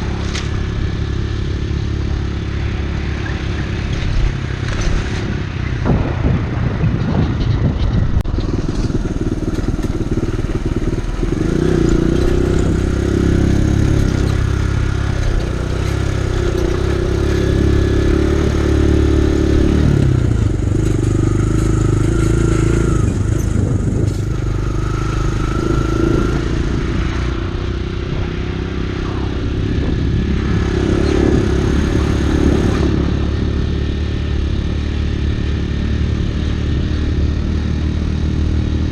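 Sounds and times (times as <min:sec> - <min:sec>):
dirtbike engine revving: 0:08.3 - 0:38.9.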